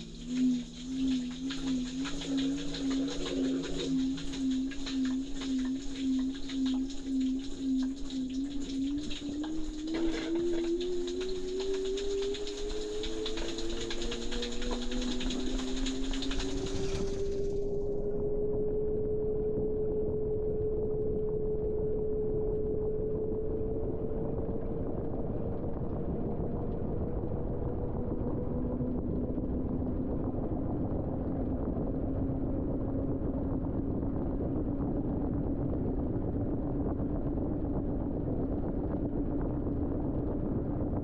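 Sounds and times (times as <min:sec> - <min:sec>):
washing machine spinning: 0:00.0 - 0:17.8
low motor whine: 0:00.0 - 0:41.0.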